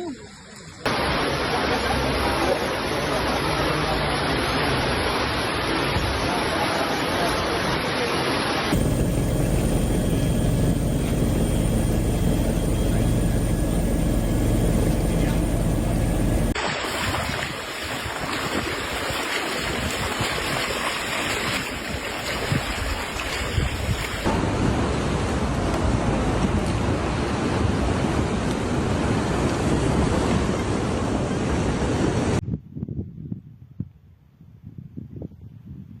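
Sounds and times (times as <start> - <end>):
floodwater rushing: 0.9 - 28.2
steady low hum: 8.7 - 16.6
wind noise on microphone: 14.3 - 36.0.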